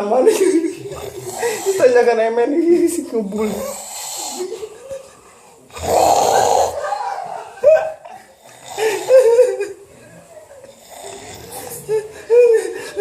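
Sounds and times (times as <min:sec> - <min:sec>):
person snoring: 0:00.8 - 0:02.1, 0:03.3 - 0:04.8, 0:05.7 - 0:07.0, 0:08.4 - 0:09.4, 0:10.8 - 0:11.8.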